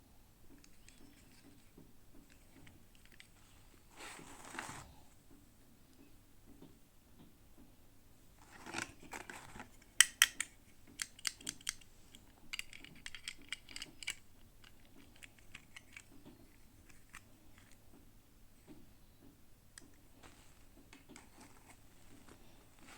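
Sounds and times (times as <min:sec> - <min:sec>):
toys clicking and snapping: 0:10.0 - 0:18.0
plastic packaging rustling: 0:20.2 - 0:22.9.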